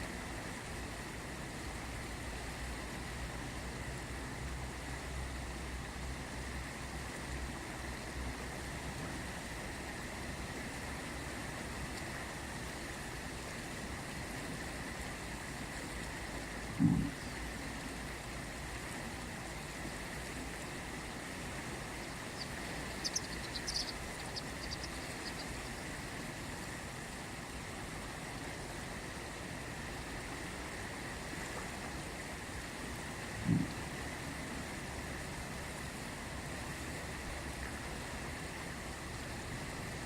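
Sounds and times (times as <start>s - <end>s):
river water rushing: 0.1s - 40.0s
high chirps: 22.0s - 25.9s.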